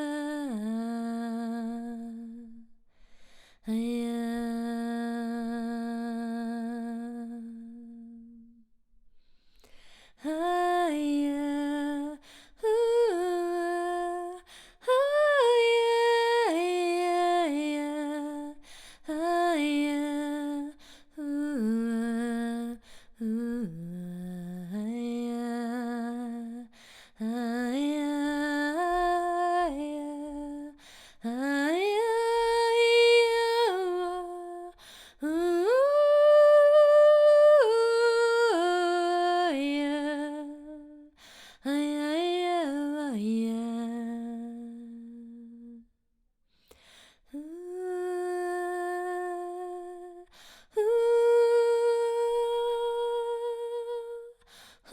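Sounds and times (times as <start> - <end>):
woman singing wordless held tones: 10.2 - 45.9, 47.3 - 54.9.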